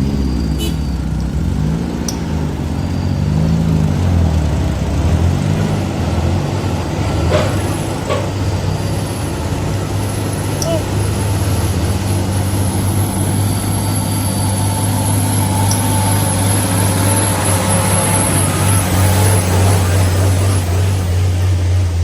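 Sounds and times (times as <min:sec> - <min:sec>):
heavy truck engine under load: 0:00.0 - 0:22.0.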